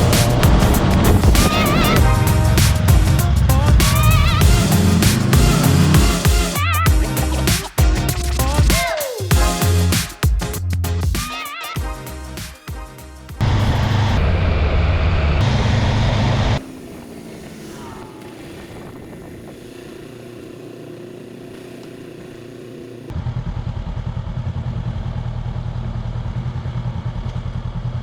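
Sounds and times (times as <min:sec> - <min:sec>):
road and wind noise: 0:00.0 - 0:05.9, 0:13.4 - 0:21.1
motorbike engine running: 0:00.0 - 0:09.6, 0:15.5 - 0:28.0.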